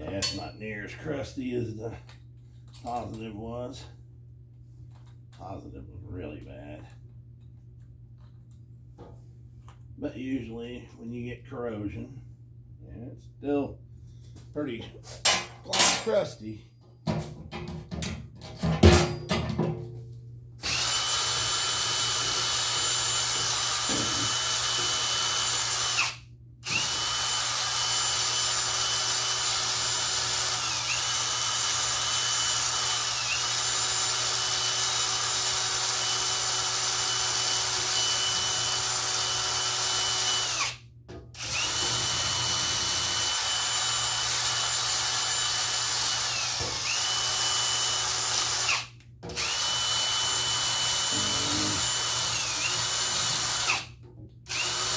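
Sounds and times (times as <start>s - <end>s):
electric drill whining: 20.6s - 40.8s, 41.4s - 53.9s, 54.5s - 54.9s.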